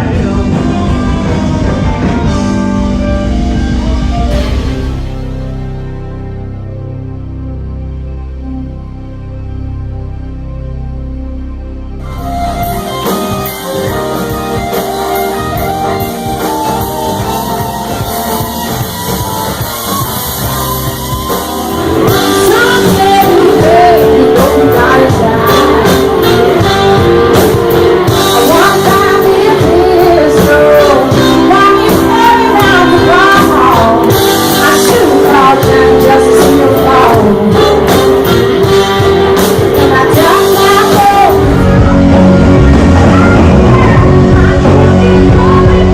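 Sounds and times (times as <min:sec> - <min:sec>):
blues-rock guitar music: 0:00.0 - 0:45.9
person singing: 0:21.7 - 0:45.9.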